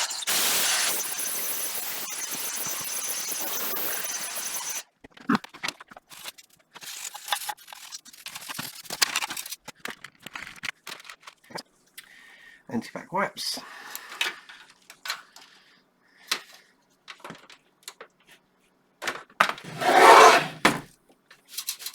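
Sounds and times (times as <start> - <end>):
clicks and knocks of handling: 16.3 - 18.4.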